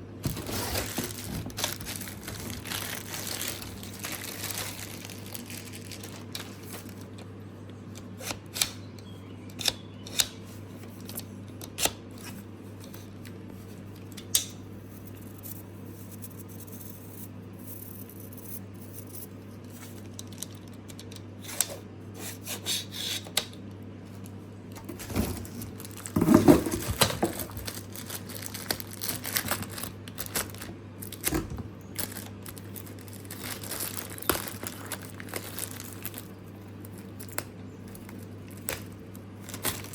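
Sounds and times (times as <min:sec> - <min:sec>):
plastic crinkling: 0:00.2 - 0:07.3, 0:24.2 - 0:39.9
packaging clicks and rustles: 0:00.2 - 0:10.0, 0:24.2 - 0:39.9.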